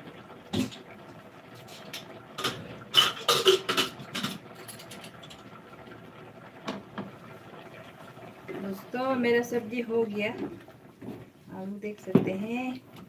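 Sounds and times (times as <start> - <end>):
kitchen utensils clattering: 2.4 - 5.4.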